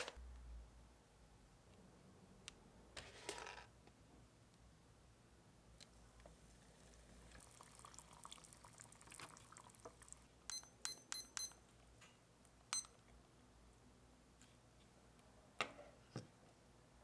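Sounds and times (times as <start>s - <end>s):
liquid pouring with crackle: 6.8s - 10.3s.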